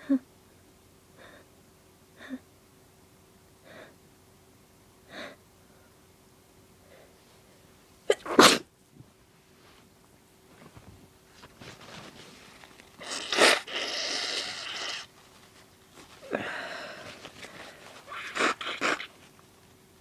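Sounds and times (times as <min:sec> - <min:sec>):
woman sneezing: 0:08.1 - 0:08.6
woman breathing softly: 0:16.2 - 0:18.0.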